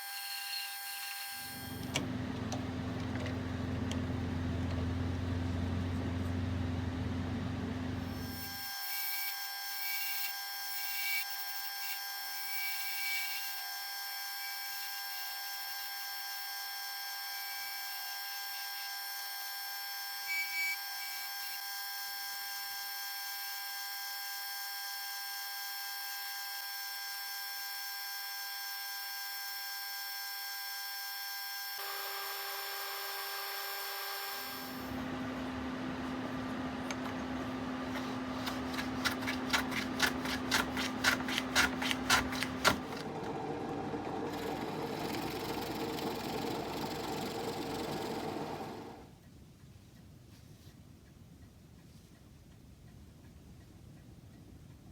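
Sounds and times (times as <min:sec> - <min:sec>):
small power tool motor running: 0:00.0 - 0:02.0, 0:08.0 - 0:49.1.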